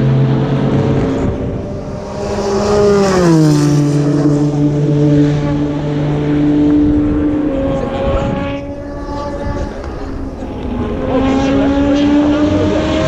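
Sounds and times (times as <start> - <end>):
race cars passing at speed: 0.0 - 13.0.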